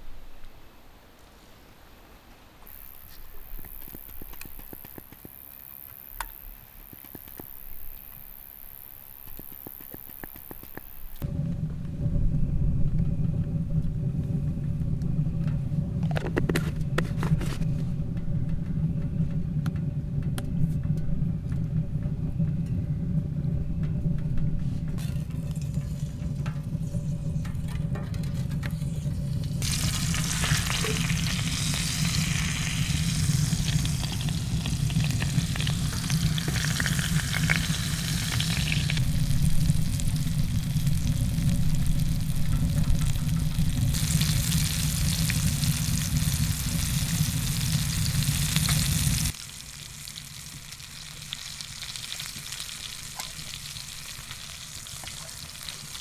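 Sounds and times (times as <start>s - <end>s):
food sizzling in a pan: 2.7s - 11.2s, 28.3s - 56.0s
wind rumble on microphone: 6.3s - 49.4s.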